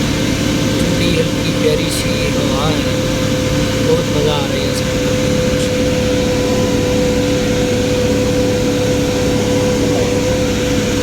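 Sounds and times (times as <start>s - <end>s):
car engine drone: 0.0s - 11.0s
constant whine: 0.0s - 11.0s
road noise: 0.0s - 11.0s.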